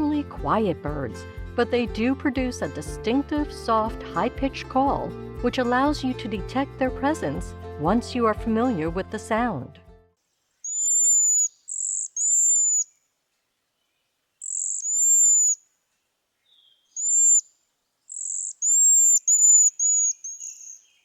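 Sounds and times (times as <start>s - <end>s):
high-pitched bird calls: 10.6s - 13.0s, 14.4s - 15.6s, 16.5s - 17.5s, 18.1s - 21.0s.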